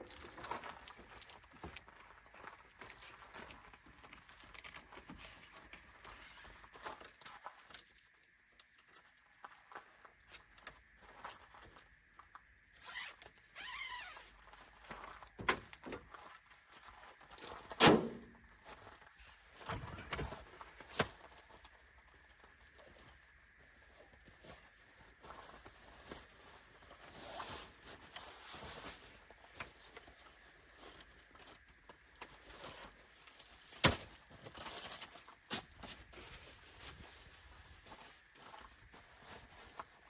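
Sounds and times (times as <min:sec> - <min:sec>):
high-pitched insect drone: 0:12.7 - 0:14.4.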